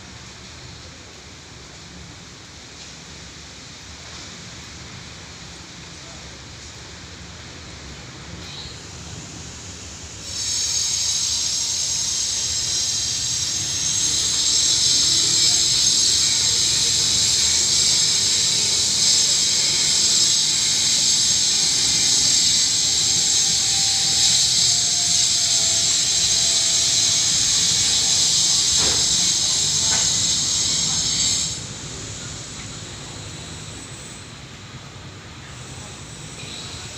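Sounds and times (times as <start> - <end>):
sliding gate motor whining: 13.4 - 33.3.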